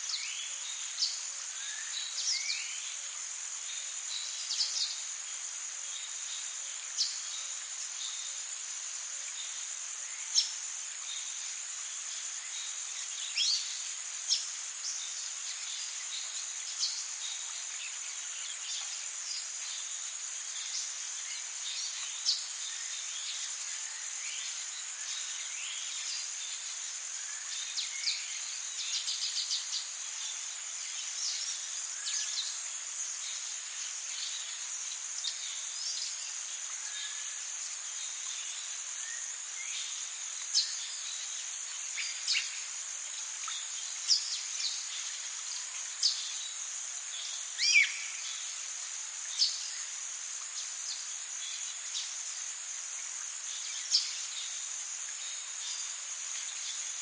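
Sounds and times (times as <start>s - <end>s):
high insect drone: 0.0s - 57.0s.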